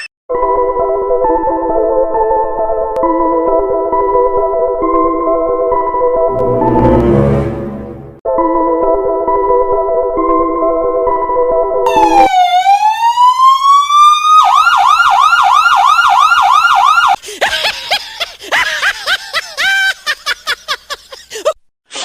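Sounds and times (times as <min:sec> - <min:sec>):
electronic police siren: 0:11.9 - 0:17.2.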